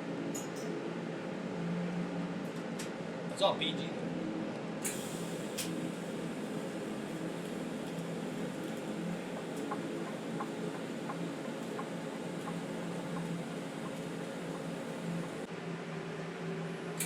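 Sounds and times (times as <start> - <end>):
welding arc buzzing: 4.8 - 15.5.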